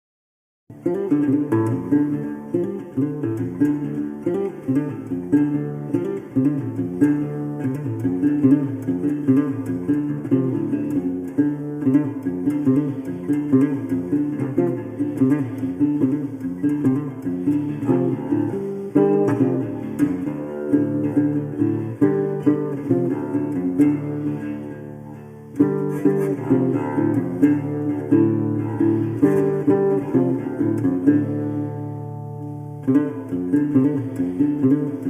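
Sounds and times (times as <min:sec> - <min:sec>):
acoustic guitar strumming: 0:00.7 - 0:35.0.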